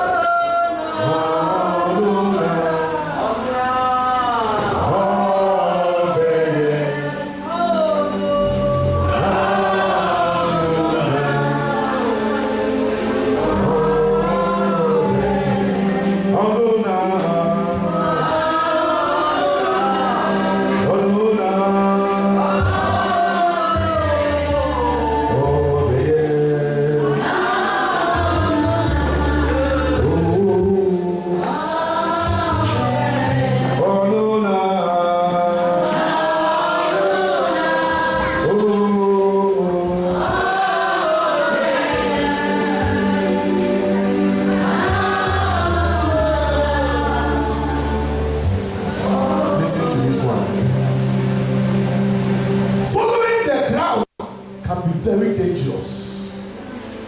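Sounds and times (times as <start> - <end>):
band playing: 0.0 - 57.0
congregation singing: 0.0 - 57.0
bass line: 7.9 - 16.7, 28.1 - 31.1, 41.9 - 53.1.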